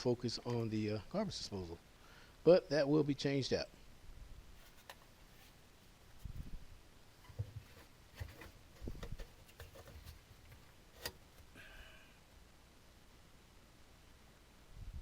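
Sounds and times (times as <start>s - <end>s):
faint clicks and knocks: 7.2s - 11.5s.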